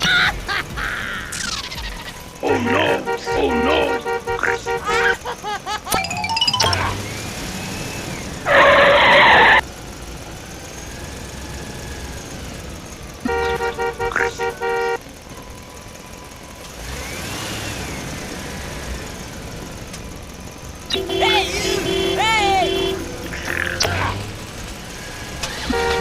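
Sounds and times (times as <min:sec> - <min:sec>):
vehicle horn honking: 0:02.4 - 0:05.2, 0:13.2 - 0:15.0, 0:20.9 - 0:23.7, 0:25.5 - 0:26.0.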